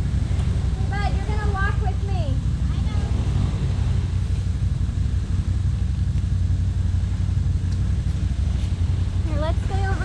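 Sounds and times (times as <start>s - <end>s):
atv engine running: 0.0s - 10.0s.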